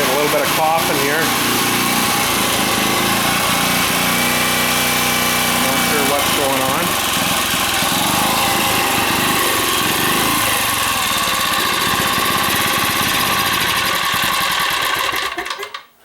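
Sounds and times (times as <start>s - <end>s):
generator engine coughing: 1.2s - 14.2s.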